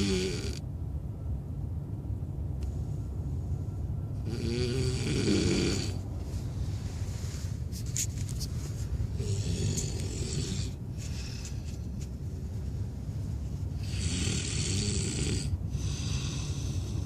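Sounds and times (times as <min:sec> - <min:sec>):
man snoring: 0:00.0 - 0:00.6, 0:04.2 - 0:06.0, 0:09.2 - 0:10.8, 0:13.8 - 0:17.0
steady low rumble: 0:00.0 - 0:17.0.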